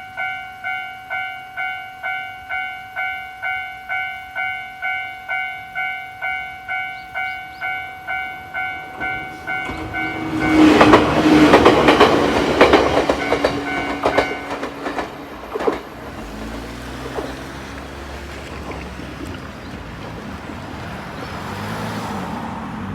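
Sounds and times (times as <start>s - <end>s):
level-crossing warning bell: 0.0s - 17.3s
train wheels clattering over rail joints: 8.6s - 21.5s.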